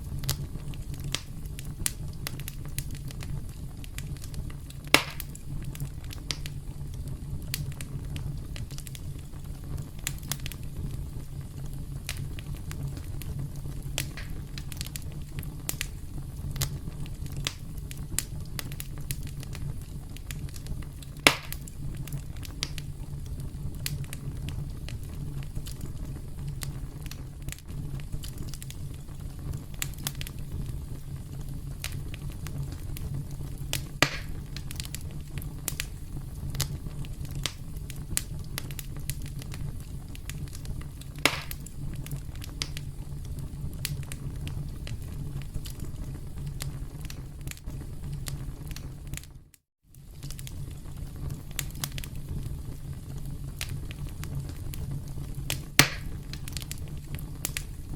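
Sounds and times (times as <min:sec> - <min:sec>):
campfire crackling and popping: 0:00.0 - 0:57.9.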